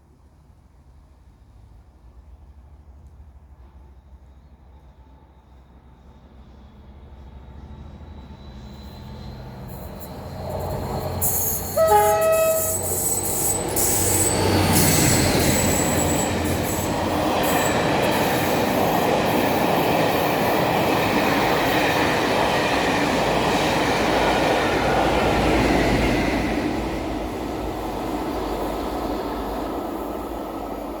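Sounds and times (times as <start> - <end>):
high ringing from rails: 10.4 - 18.2
train horn blast: 11.6 - 13.5.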